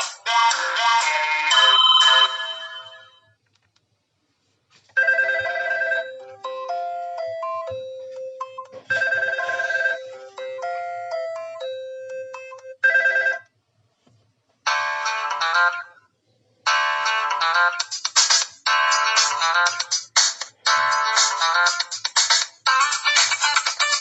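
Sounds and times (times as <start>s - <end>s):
electronic phone ringtone melody: 0.6s - 3.3s, 5.0s - 13.4s, 14.7s - 16.0s, 18.7s - 19.9s.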